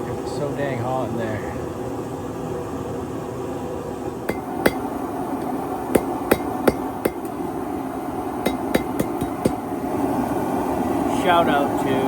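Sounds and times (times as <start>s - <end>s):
hammer striking steel on anvil: 4.3s - 7.4s, 8.4s - 9.6s.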